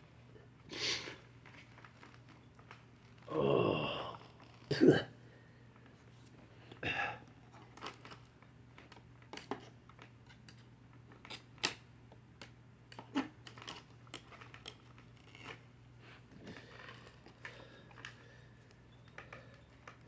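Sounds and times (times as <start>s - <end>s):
steady low hum: 0.0s - 20.0s
hands clicking and scraping brush roll: 7.5s - 20.0s.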